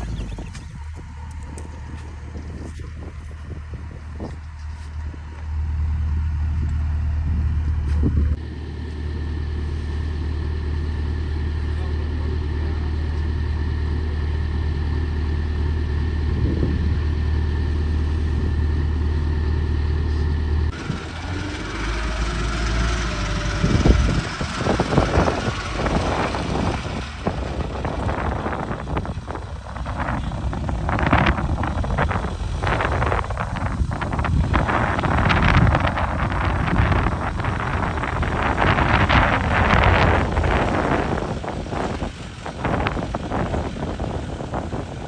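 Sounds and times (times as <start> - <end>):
combine harvester diesel engine drone: 0.0 - 45.0.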